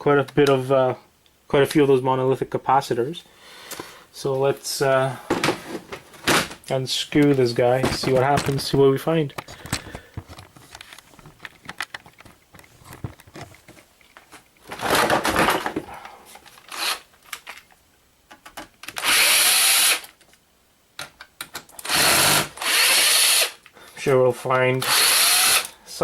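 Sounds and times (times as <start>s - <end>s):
small clicks and handling noises: 9.3s - 14.7s, 16.3s - 19.0s, 20.0s - 20.4s, 21.0s - 21.9s
power drill whirring: 16.7s - 17.0s, 19.0s - 20.1s, 21.8s - 23.6s, 24.8s - 25.8s.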